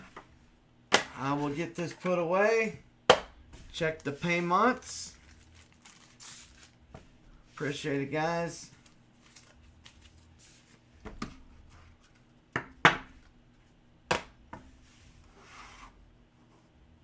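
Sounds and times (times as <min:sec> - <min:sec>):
cards and boxes knocking on table: 0:03.1 - 0:03.4, 0:12.6 - 0:13.2, 0:14.1 - 0:14.7
soft rustle: 0:03.6 - 0:08.0, 0:08.6 - 0:11.0.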